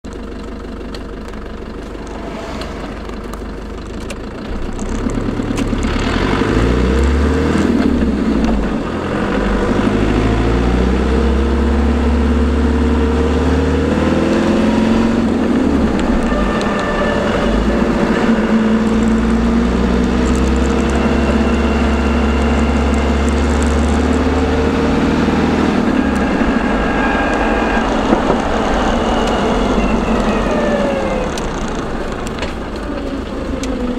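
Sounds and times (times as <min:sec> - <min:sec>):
engine noise: 0:00.0 - 0:33.9
road noise: 0:00.0 - 0:33.9
transfer box whining: 0:14.2 - 0:33.9.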